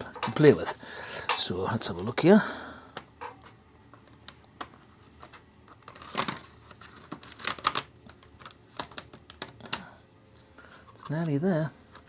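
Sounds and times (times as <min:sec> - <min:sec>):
plastic clips clicking and snapping: 0:07.0 - 0:09.8.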